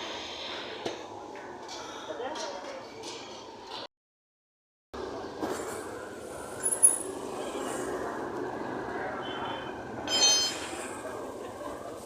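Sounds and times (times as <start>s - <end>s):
road traffic rumble: 5.0s - 12.0s.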